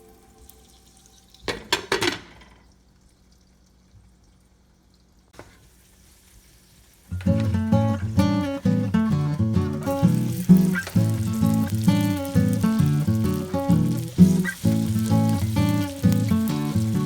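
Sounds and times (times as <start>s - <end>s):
background music: 7.5s - 17.0s.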